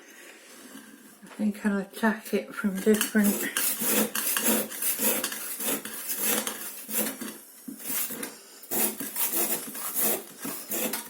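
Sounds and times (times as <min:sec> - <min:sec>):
hand saw scraping frozen block: 0:02.7 - 0:11.0.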